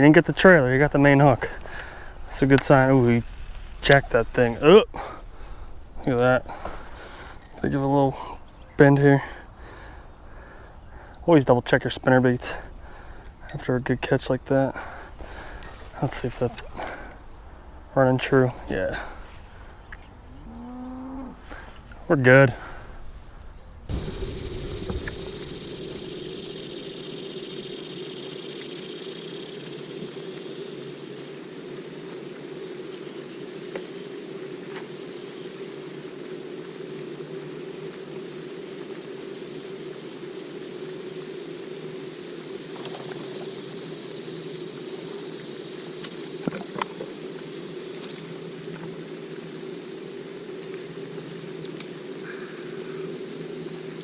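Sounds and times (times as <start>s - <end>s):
motor hum with hiss: 14.5s - 54.0s
motor humming and hissing: 23.9s - 28.8s.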